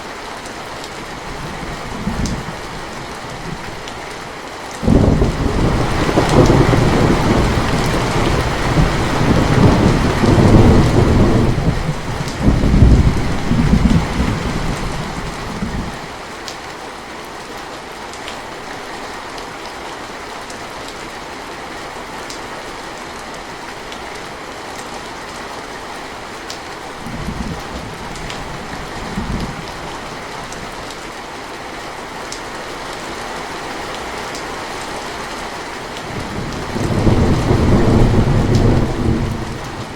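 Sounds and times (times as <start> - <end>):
steady rainfall: 0.0 - 39.9
thunder rumbling: 4.8 - 16.1, 27.0 - 30.8, 36.1 - 39.9.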